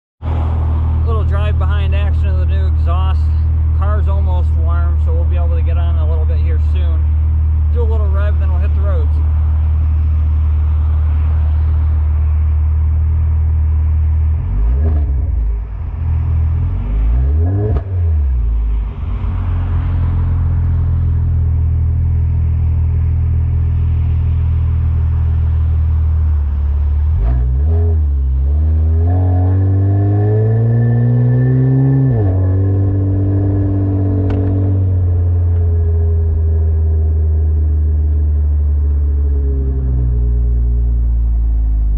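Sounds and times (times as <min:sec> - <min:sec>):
car engine idling: 0:00.2 - 0:29.0, 0:32.9 - 0:41.9
car engine revving: 0:00.2 - 0:41.9.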